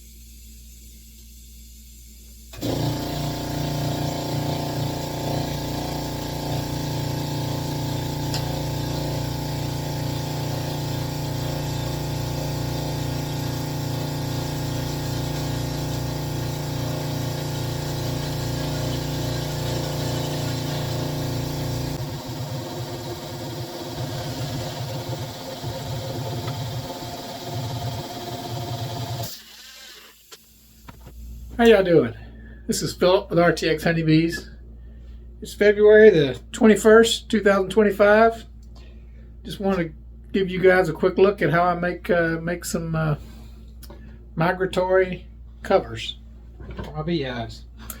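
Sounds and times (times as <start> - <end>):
power tool motor pulsing: 2.5 - 30.4.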